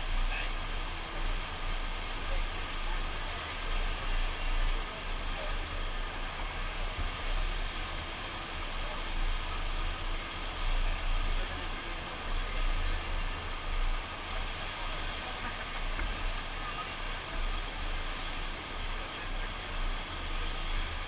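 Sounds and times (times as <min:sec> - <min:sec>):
water rushing: 0:00.0 - 0:21.0.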